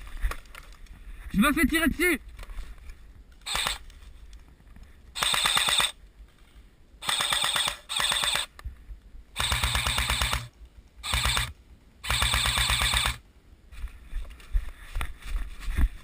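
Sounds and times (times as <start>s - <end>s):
airsoft rifle firing bursts: 3.4s - 3.8s, 5.2s - 6.0s, 7.0s - 8.5s, 9.4s - 13.2s.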